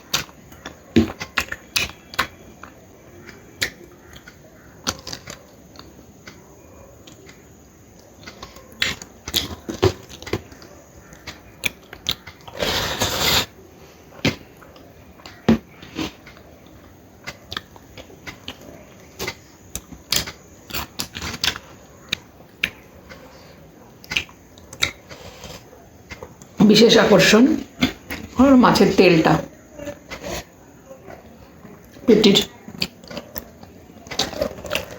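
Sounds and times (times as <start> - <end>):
chewing and mouth smacks: 7.0 - 12.6, 14.2 - 23.4, 24.0 - 26.6.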